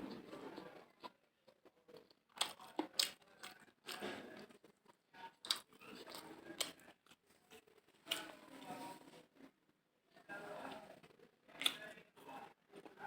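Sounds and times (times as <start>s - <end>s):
person chewing and smacking: 1.0s - 4.6s, 5.2s - 8.3s.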